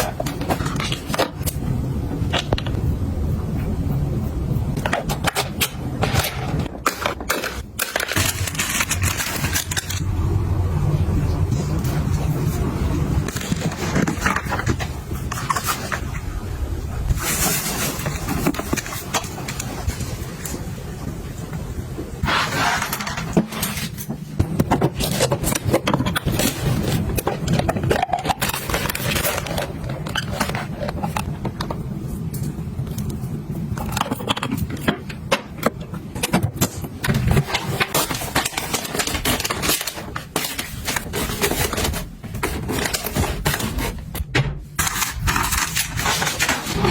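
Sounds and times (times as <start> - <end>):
low steady hum: 0.0 - 46.9
objects clicking and knocking: 4.7 - 10.1, 22.2 - 46.9
rustling: 17.0 - 20.7, 37.0 - 44.1.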